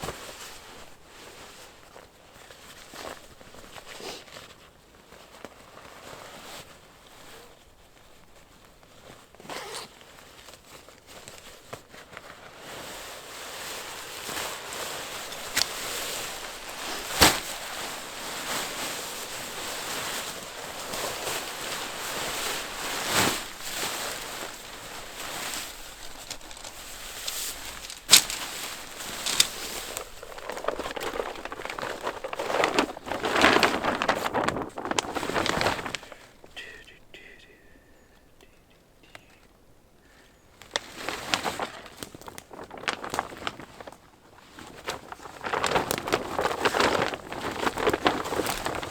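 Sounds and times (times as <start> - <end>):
rustling and crackling: 0.0 - 37.4, 38.6 - 48.9.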